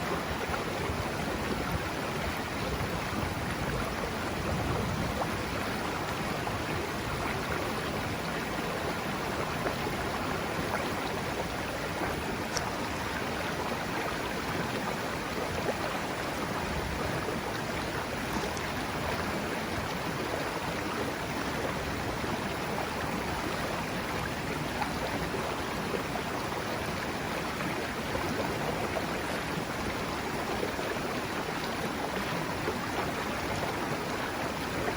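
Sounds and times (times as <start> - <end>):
river rushing over rocks: 0.0 - 34.9.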